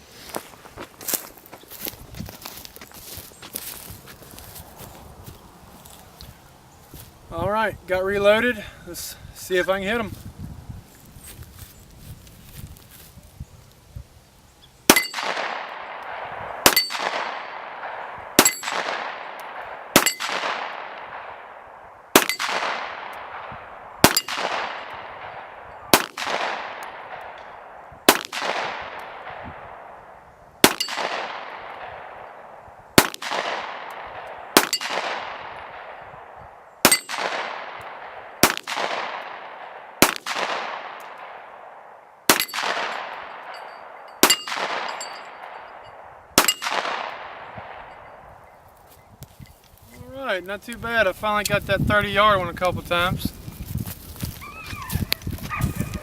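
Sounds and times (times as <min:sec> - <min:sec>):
pistol shots echoing: 0:14.9 - 0:30.0, 0:30.6 - 0:48.2
steel targets clanging: 0:43.4 - 0:46.8.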